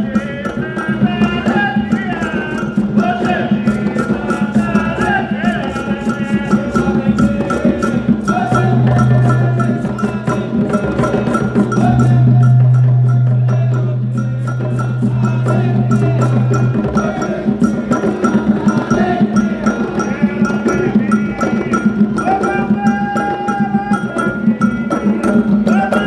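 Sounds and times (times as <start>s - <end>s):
hand drums: 0.0s - 26.0s
voices singing a chant: 0.0s - 26.0s
struck bell or wood block: 7.1s - 25.8s.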